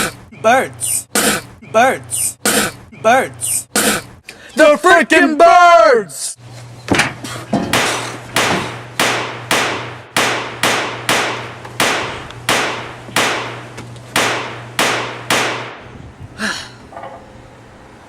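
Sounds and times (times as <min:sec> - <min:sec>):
loud sharp bangs: 0:07.6 - 0:15.9.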